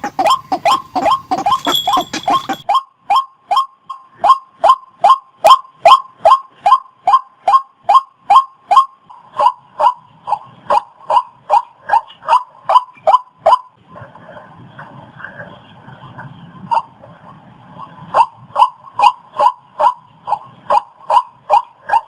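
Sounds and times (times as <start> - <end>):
waterhen harsh calls: 0.0 - 13.7.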